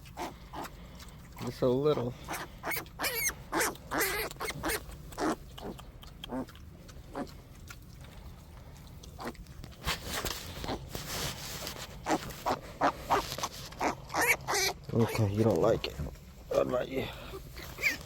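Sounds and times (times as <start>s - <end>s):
young farm animals crying: 0.0s - 8.4s, 12.0s - 15.4s, 17.2s - 18.0s.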